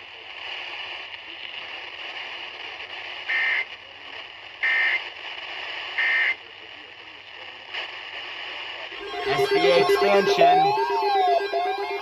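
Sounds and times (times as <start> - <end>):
buzzy digital data tones: 9.0 - 12.0.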